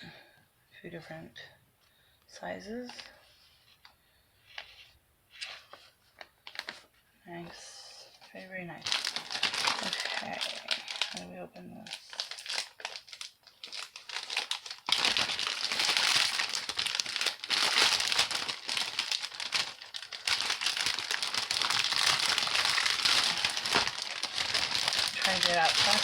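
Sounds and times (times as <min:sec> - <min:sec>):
plastic packaging crackling: 0:05.7 - 0:06.9, 0:08.3 - 0:26.0.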